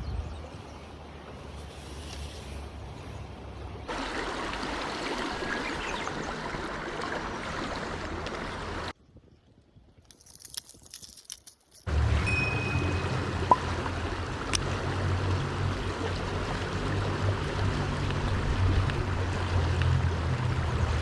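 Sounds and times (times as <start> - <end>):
wind rumble on microphone: 0.0 - 3.9, 7.2 - 10.1, 13.2 - 21.0
stream water rushing: 1.0 - 8.9, 11.9 - 21.0.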